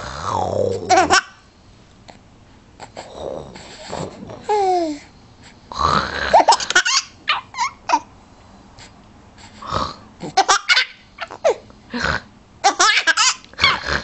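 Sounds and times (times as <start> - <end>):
child fake snoring: 0.0 - 0.9, 5.7 - 6.5, 9.6 - 10.4, 11.9 - 12.3, 13.6 - 14.0.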